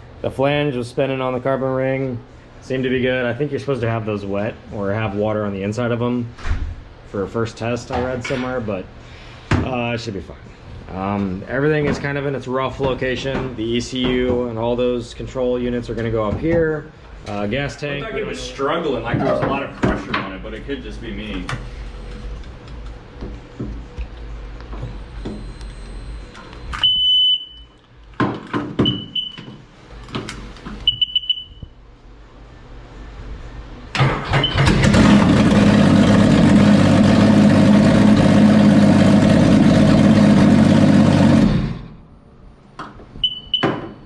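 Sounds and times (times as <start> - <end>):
short high beeps: 24.9 - 27.8, 43.2 - 43.7
jet ski engine running: 34.8 - 41.8.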